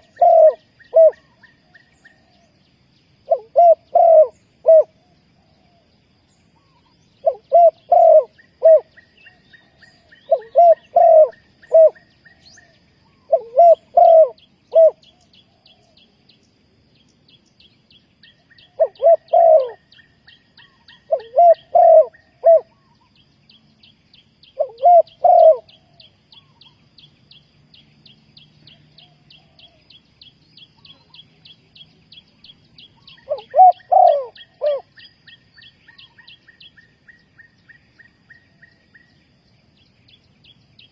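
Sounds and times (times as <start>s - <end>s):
dove cooing: 0.0s - 2.5s, 3.3s - 5.9s, 6.6s - 16.0s, 18.6s - 19.9s, 20.6s - 23.0s, 24.5s - 26.6s, 33.0s - 35.0s.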